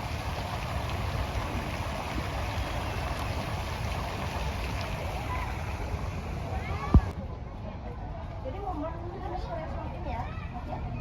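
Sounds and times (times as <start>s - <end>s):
road noise: 0.0s - 7.2s.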